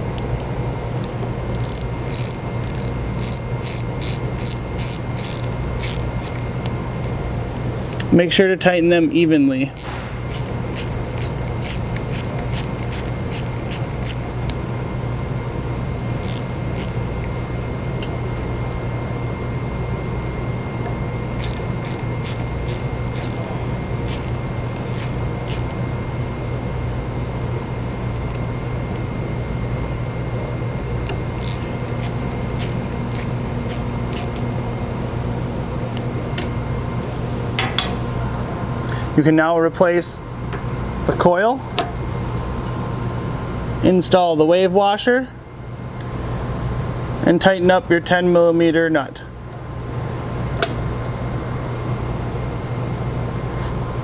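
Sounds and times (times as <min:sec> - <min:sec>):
steady low hum: 0:00.0 - 0:41.2
ratchet clicking: 0:01.5 - 0:06.7, 0:09.8 - 0:14.5, 0:16.2 - 0:17.3, 0:21.3 - 0:25.8, 0:31.0 - 0:34.5.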